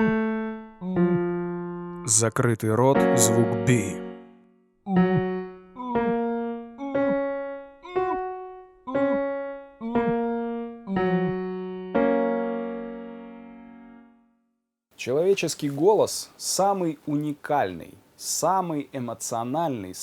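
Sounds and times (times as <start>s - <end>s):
piano notes: 0.0s - 14.4s.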